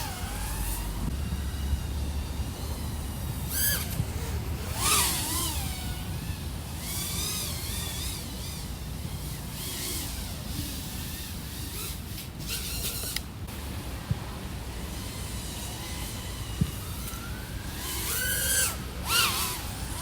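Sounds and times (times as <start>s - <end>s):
rushes of air noise: 0.0s - 12.5s
quadcopter motors whining: 0.0s - 20.0s.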